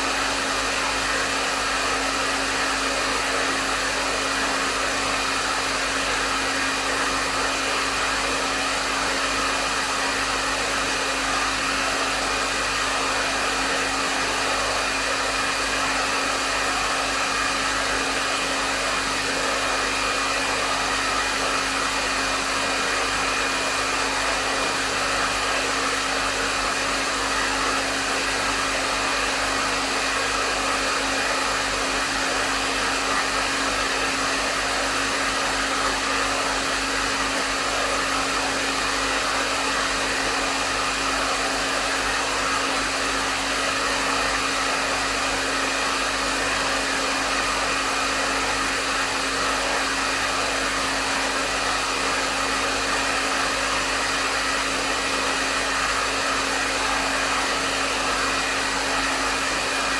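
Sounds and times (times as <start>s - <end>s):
hair dryer running: 0.0s - 59.9s.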